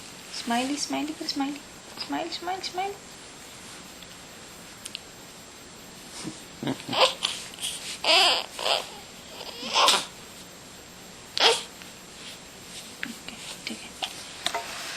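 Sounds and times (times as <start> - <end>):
baby hiccuping and babbling: 11.4 - 11.7.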